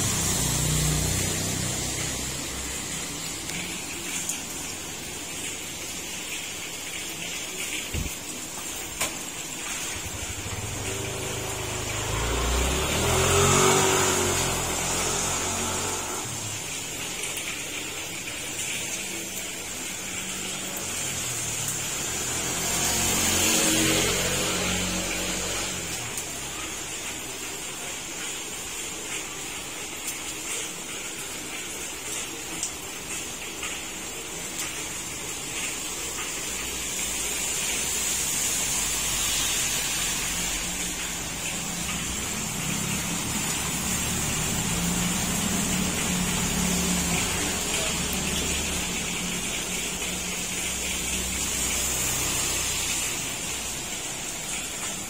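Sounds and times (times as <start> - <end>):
vehicle engine passing: 0.0 - 5.0, 9.7 - 17.3, 19.8 - 27.2, 36.9 - 55.0
heavy rain falling: 0.0 - 55.0
water dripping: 0.0 - 55.0.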